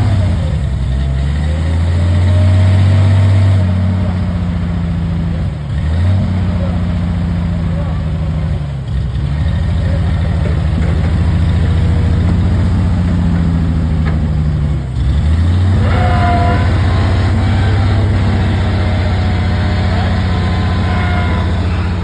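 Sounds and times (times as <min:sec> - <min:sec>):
heavy equipment engine running: 0:00.0 - 0:22.0.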